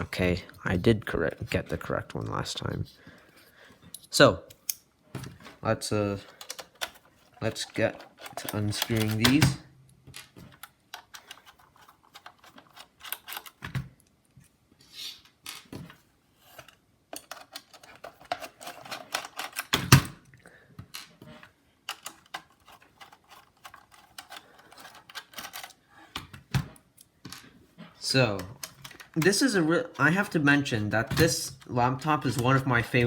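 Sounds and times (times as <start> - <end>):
screwdriver clicking and scraping: 6.3 - 9.4, 10.6 - 13.6, 16.5 - 19.7, 21.9 - 25.8.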